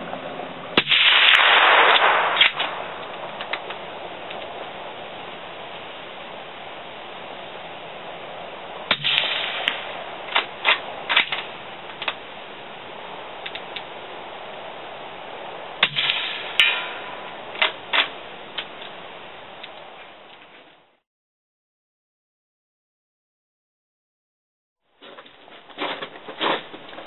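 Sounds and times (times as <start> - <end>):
suppressed rifle shots: 0.8 - 3.6, 8.9 - 11.4, 15.8 - 17.0.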